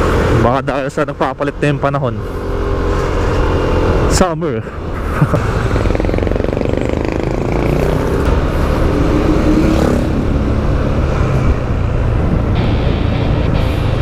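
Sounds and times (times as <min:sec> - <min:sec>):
motorcycle engine running: 0:05.6 - 0:09.2
wind rumbling over microphone: 0:08.1 - 0:14.0.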